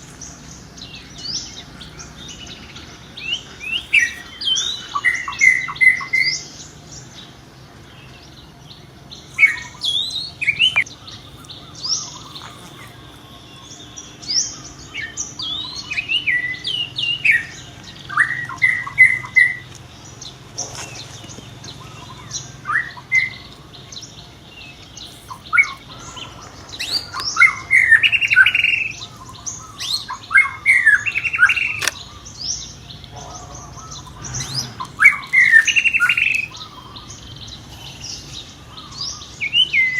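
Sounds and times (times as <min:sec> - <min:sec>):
baby monkey squeaking: 0:09.3 - 0:13.5, 0:34.4 - 0:36.6.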